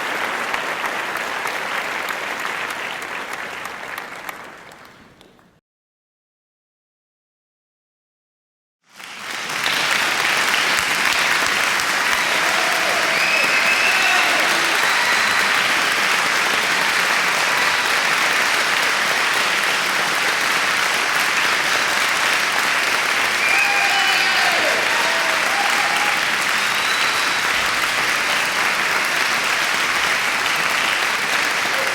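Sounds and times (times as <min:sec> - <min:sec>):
crowd applauding: 0:00.0 - 0:05.6, 0:08.9 - 0:31.9
cheers and whistles: 0:11.8 - 0:18.5, 0:21.6 - 0:31.9.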